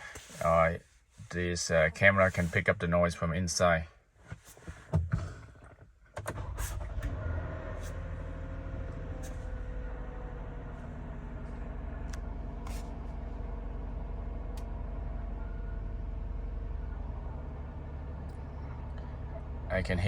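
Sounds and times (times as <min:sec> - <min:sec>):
car engine starting and idling: 0:04.8 - 0:20.0.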